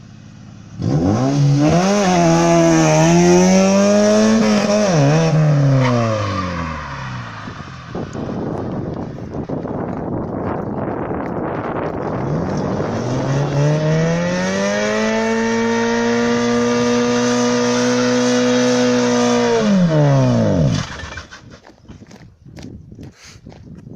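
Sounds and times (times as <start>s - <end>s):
car engine revving: 0.1s - 9.8s, 11.4s - 21.5s.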